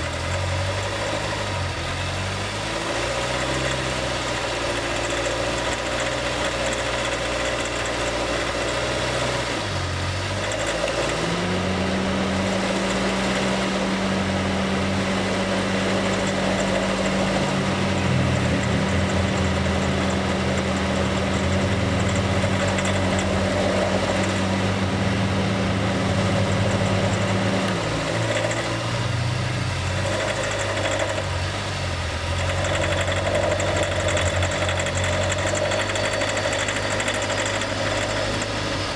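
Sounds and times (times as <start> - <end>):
car engine running: 0.0 - 38.9
higher steady hum: 12.6 - 30.0.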